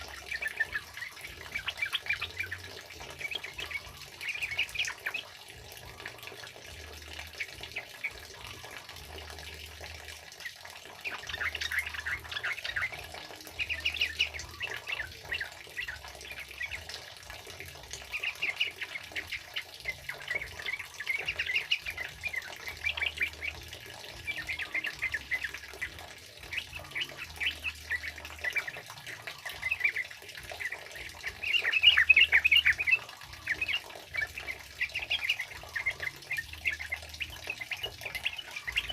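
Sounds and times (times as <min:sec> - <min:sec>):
bulbuls chirping: 0:00.0 - 0:38.9.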